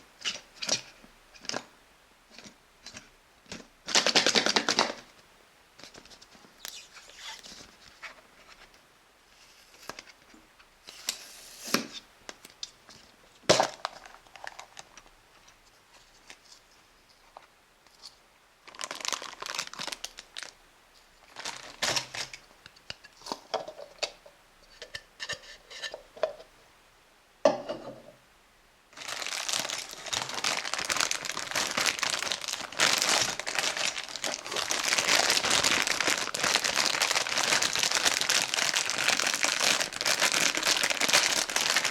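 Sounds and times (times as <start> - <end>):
wrapper crinkling and tearing: 3.9 - 5.0, 13.6 - 15.1, 18.6 - 20.6, 21.2 - 22.4, 29.0 - 41.9
packaging clicks and rustles: 18.7 - 20.6, 21.2 - 22.4, 29.0 - 41.9.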